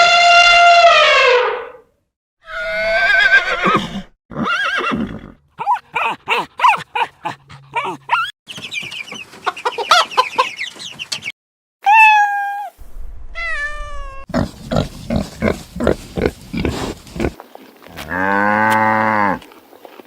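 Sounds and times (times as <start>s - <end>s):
horse whinnying: 2.4s - 5.4s
hen clucking: 7.8s - 11.2s, 14.3s - 18.4s
cat meowing: 11.8s - 14.3s.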